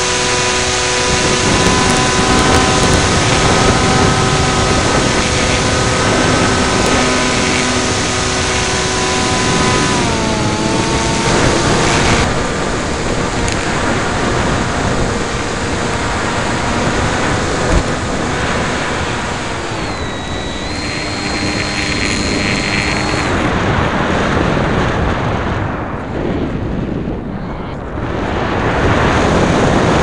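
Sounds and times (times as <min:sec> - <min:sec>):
electric motor and propeller whine: 0:00.0 - 0:26.4, 0:27.5 - 0:30.0
wind buffeting microphone: 0:00.0 - 0:30.0.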